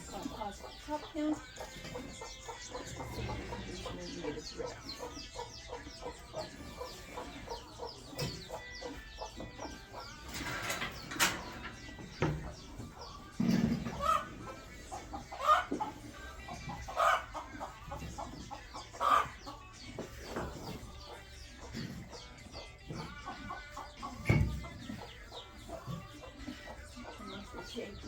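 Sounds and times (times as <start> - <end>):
chickens clucking: 0.0 - 28.0
loud chicken calls: 13.9 - 14.3.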